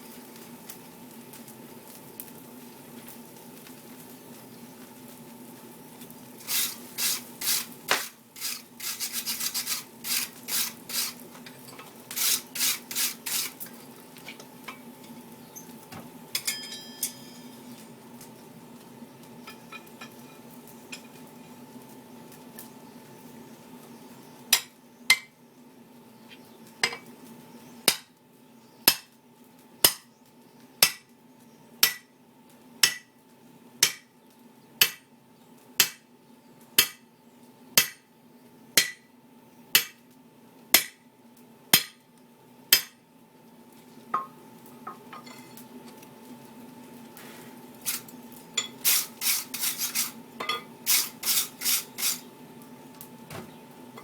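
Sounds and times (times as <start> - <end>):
hammer striking hot steel on anvil: 16.3 - 17.7, 24.5 - 25.3, 27.9 - 28.1, 28.9 - 29.1, 29.8 - 30.1, 30.8 - 31.1, 31.8 - 32.1, 32.8 - 33.1, 33.8 - 34.1, 34.8 - 35.1, 35.8 - 36.0, 36.8 - 37.0, 37.8 - 38.1, 38.8 - 39.1, 39.8 - 40.0, 40.8 - 41.0, 41.8 - 42.0, 42.7 - 43.0, 48.6 - 52.2
ringing metal taps: 16.4 - 17.6.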